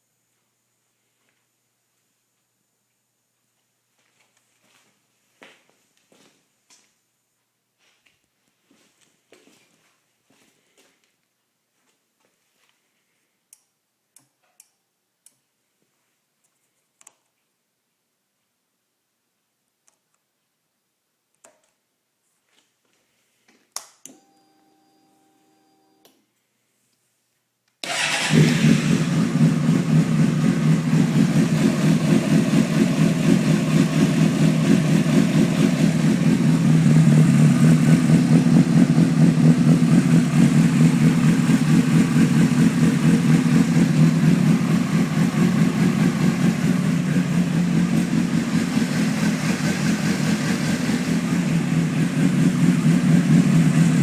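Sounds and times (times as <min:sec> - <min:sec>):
click: 0:13.5 - 0:15.4, 0:16.4 - 0:17.3, 0:19.8 - 0:20.2, 0:23.7 - 0:24.2
motorcycle engine idling: 0:27.9 - 0:54.0.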